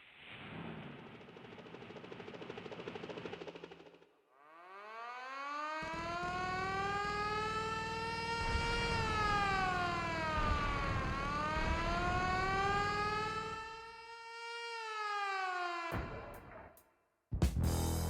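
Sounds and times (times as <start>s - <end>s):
siren wailing: 4.3s - 16.8s.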